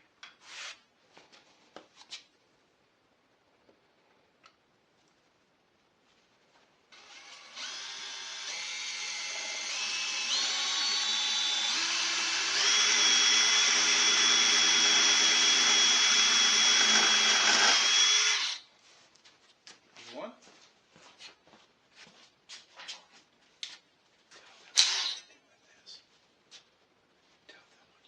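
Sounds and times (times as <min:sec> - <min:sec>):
power drill motor whine: 0:07.0 - 0:18.6.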